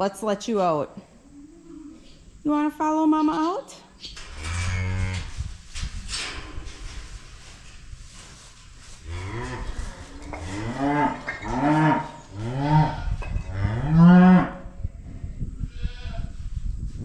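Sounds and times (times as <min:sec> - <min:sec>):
cattle mooing: 0:09.1 - 0:14.6.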